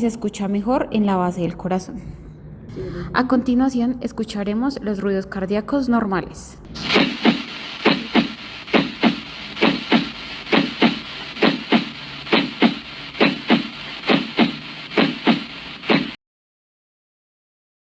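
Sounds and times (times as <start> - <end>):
heartbeat lub-dub: 6.8 - 16.2.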